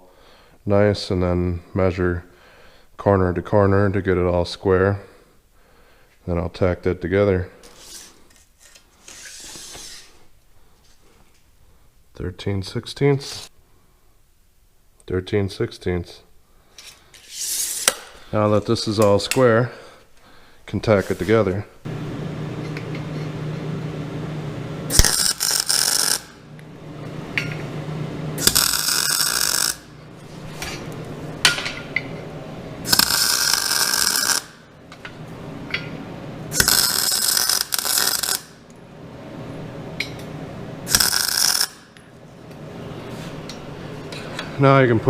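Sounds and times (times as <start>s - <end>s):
welder crackling: 20.9s - 43.6s
welder hum: 21.8s - 44.5s.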